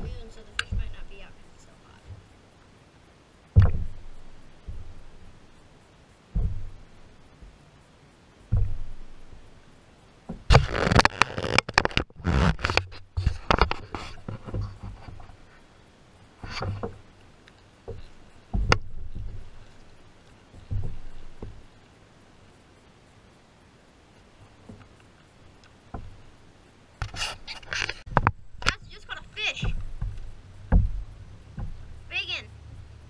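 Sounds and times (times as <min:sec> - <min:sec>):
knocks and scrapes on kayak hull: 0:00.0 - 0:01.4, 0:03.5 - 0:05.6, 0:06.3 - 0:07.6, 0:08.4 - 0:09.6, 0:10.2 - 0:15.7, 0:16.4 - 0:17.1, 0:17.8 - 0:21.8, 0:24.4 - 0:26.4, 0:27.0 - 0:32.1
clicks and rattles: 0:10.5 - 0:15.4.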